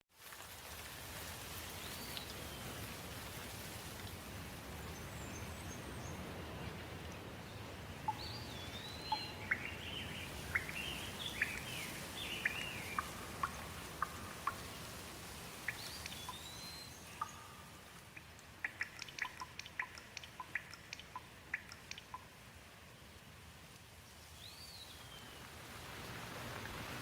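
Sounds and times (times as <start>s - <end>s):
steady rain: 0.1s - 27.0s
songbirds whistling and chirping: 7.6s - 14.8s, 15.6s - 17.8s, 18.6s - 22.2s.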